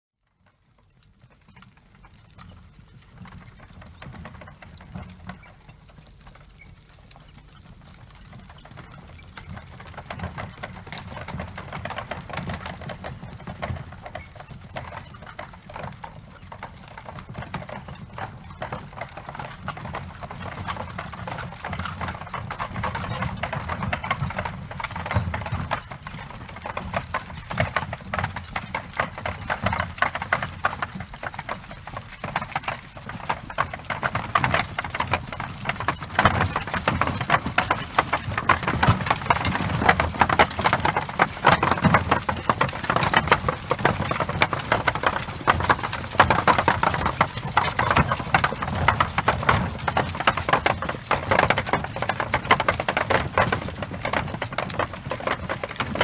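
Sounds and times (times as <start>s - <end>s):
horse hooves clip-clopping: 0.4s - 56.0s
cart wheels rattling: 1.0s - 56.0s.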